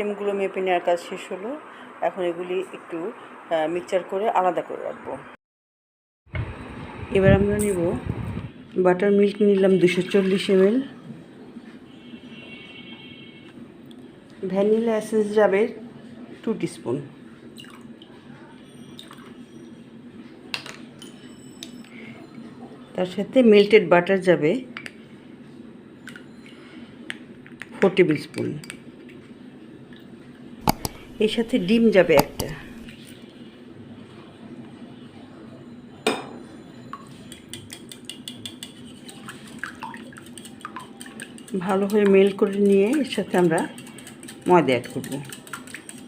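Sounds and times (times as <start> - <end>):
egg cracked against bowl: 30.6 - 31.2
utensil clicking against bowl: 30.6 - 31.2, 32.1 - 32.8, 37.3 - 38.8, 39.6 - 46.0
teaspoon tapping bottle: 30.6 - 32.9, 37.3 - 39.2
low steady hum: 30.6 - 37.5.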